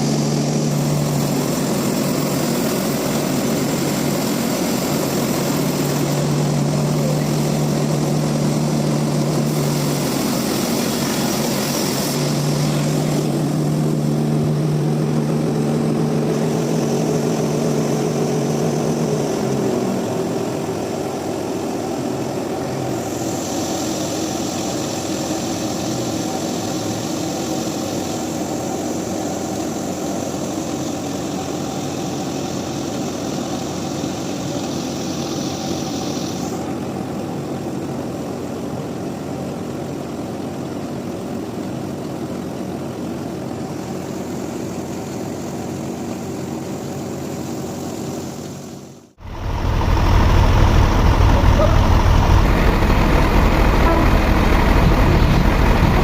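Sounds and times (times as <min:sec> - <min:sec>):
sawmill machinery running: 0:00.0 - 0:56.0
low hum: 0:49.1 - 0:56.0.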